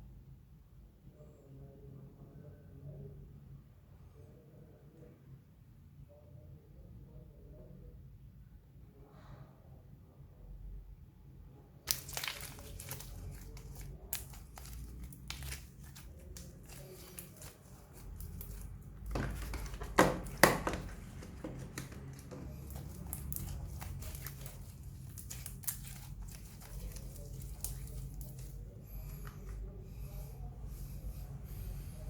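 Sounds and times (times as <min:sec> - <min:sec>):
slime squeezed and stretched: 0:11.9 - 0:28.6.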